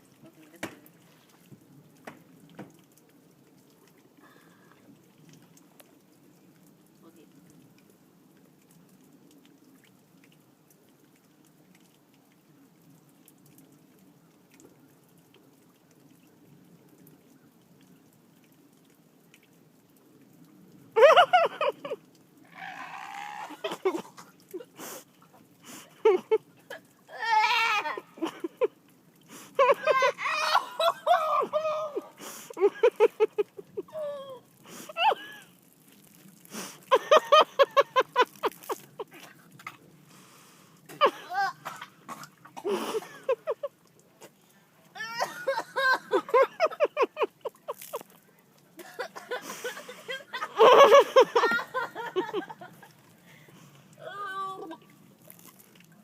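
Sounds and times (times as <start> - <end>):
light rain: 0.0 - 56.0
person vocal outburst: 29.7 - 32.2, 33.9 - 34.4, 54.0 - 54.8.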